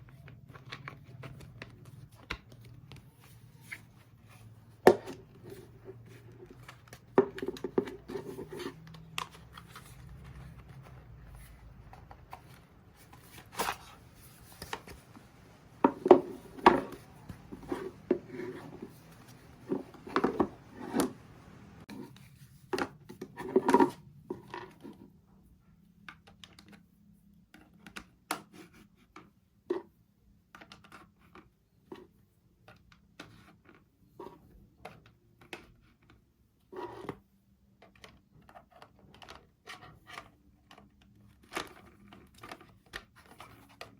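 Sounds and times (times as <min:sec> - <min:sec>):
packaging scratching and rubbing: 0:00.1 - 0:21.9.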